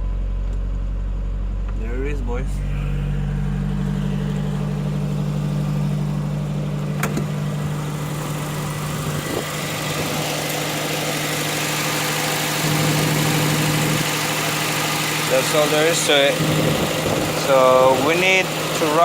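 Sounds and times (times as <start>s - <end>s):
pickup engine idling: 0.0s - 19.0s.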